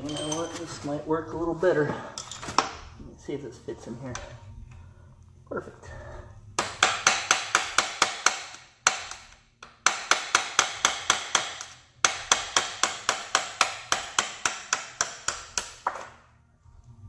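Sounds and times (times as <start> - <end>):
hammer striking a punch: 6.6 - 16.1.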